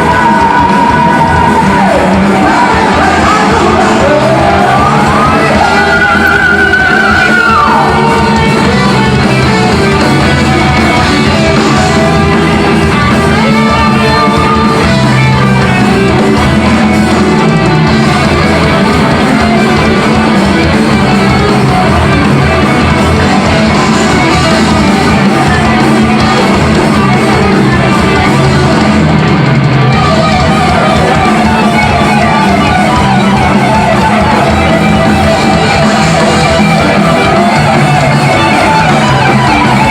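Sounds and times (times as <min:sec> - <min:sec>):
person singing: 0:00.0 - 0:17.2
bass guitar: 0:00.0 - 0:39.9
distorted electric guitar: 0:00.0 - 0:39.9
drums: 0:00.0 - 0:39.9
heavy metal band playing live: 0:00.0 - 0:39.9.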